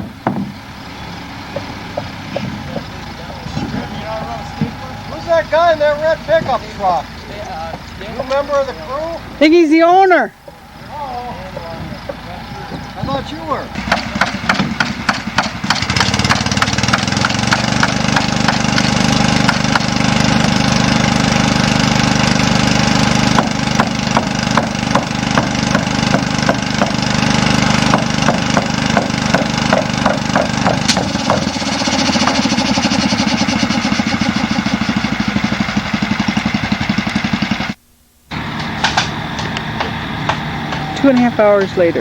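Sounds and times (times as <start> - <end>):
engine running: 0.0 - 42.0
sharp clicks and knocks: 13.8 - 20.6, 27.9 - 32.9, 38.5 - 41.8.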